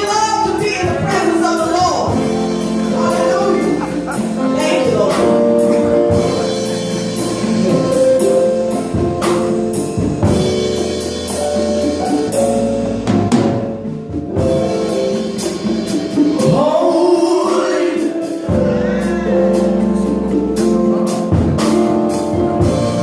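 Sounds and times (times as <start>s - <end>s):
drum kit: 0.0s - 23.0s
gospel singing: 16.2s - 23.0s.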